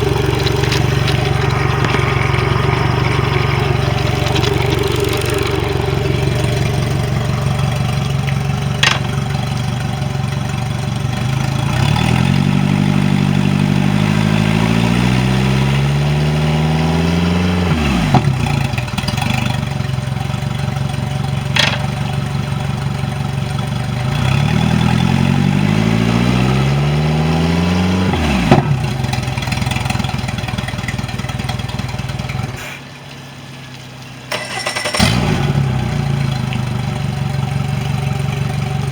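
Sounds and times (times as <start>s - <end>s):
outboard engine revving: 0.0s - 32.9s, 34.3s - 38.9s.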